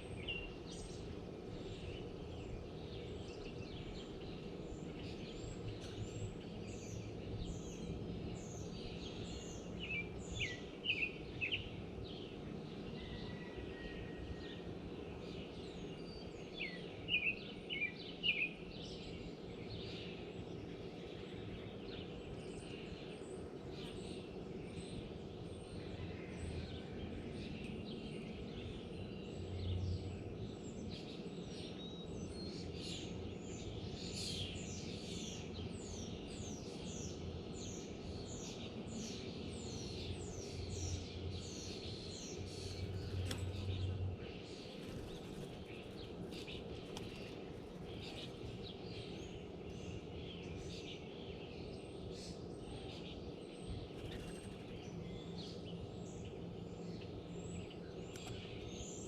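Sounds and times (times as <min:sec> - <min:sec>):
birds chirping and calling: 0:39.6 - 0:59.0.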